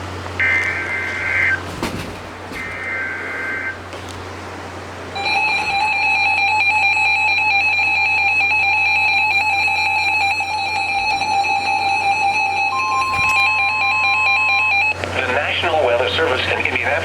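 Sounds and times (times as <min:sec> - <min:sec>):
digital header warble: 0:00.4 - 0:01.7, 0:02.5 - 0:03.8
steady electronic attention tone: 0:05.2 - 0:15.0.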